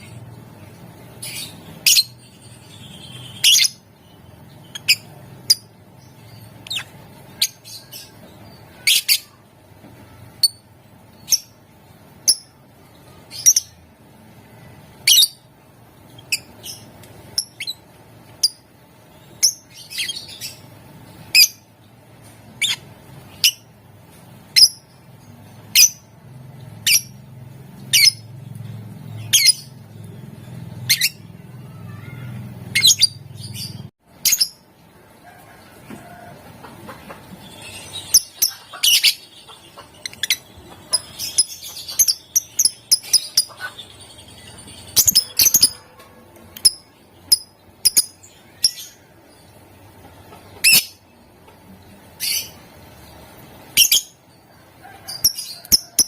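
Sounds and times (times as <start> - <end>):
lovebird squawking: 37.5 - 44.0, 44.9 - 46.0.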